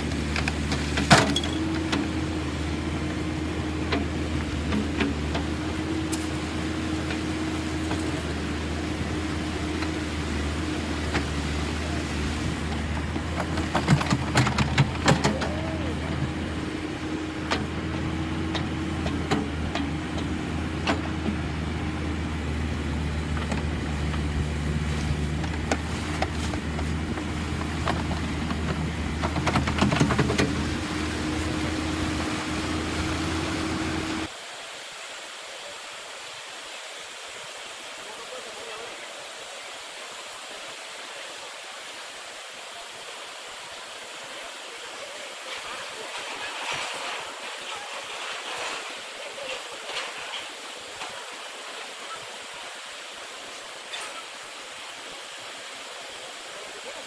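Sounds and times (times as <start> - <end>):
excavator engine humming: 0.0 - 34.3
knocks and clatter: 12.8 - 15.6, 25.4 - 30.7.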